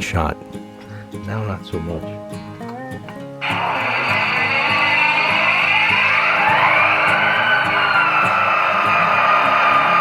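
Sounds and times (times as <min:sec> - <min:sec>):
guitar music: 0:00.0 - 0:10.0
loud steady hiss: 0:03.4 - 0:10.0.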